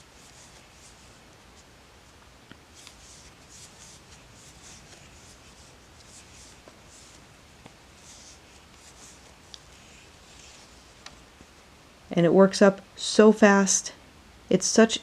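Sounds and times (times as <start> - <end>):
yarn rustling through loops: 0.0 - 11.8.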